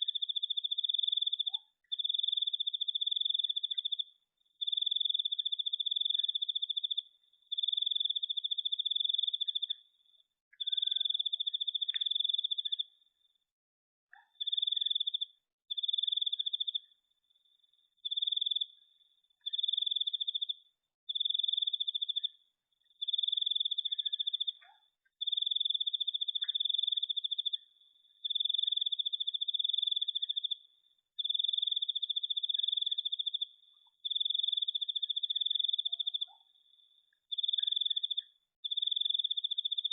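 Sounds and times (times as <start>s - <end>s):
cricket trilling: 10.6s - 13.0s, 19.5s - 22.4s, 23.0s - 27.6s, 28.2s - 39.9s.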